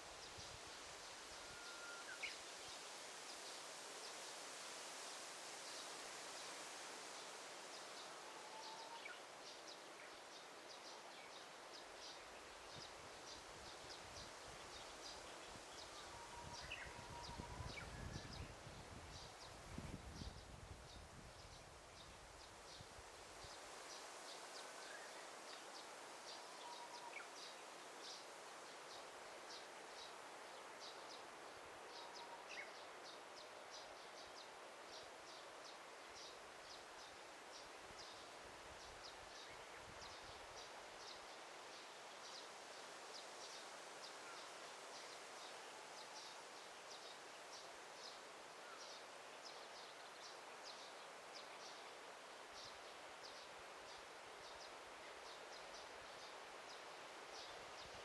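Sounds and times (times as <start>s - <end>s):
soft rustling hiss: 0.0s - 58.0s
faint bird whistles: 1.4s - 2.4s.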